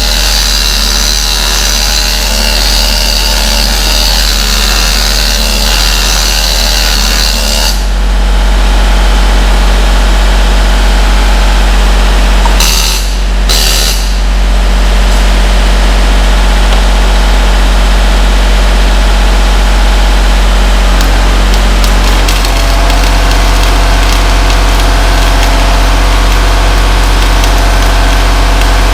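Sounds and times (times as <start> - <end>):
hissing welding arc: 0.0 - 7.9, 12.6 - 14.3, 19.6 - 28.9
welding machine hum: 0.0 - 28.9.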